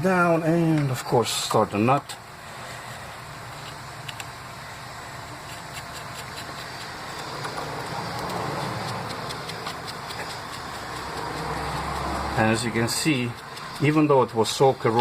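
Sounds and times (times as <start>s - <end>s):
engine-like hum: 0.0s - 15.0s.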